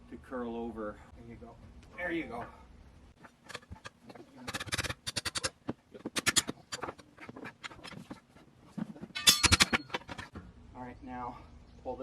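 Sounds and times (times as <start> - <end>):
tools clicking and scraping on tire: 3.2 - 10.4.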